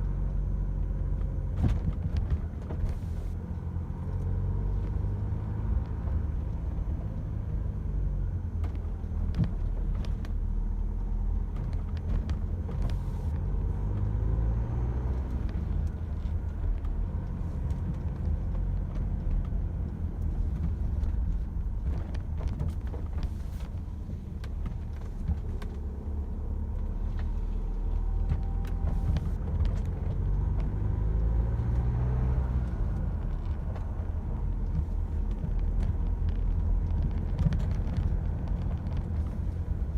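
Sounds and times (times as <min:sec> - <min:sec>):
car engine running: 0:00.0 - 0:39.9.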